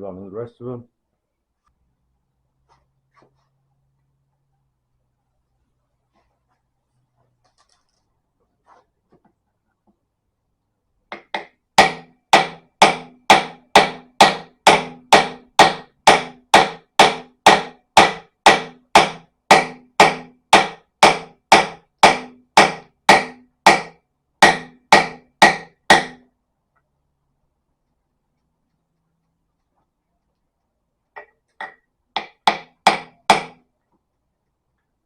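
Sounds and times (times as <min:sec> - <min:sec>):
hammer striking metal: 0:11.1 - 0:26.2, 0:31.2 - 0:33.6.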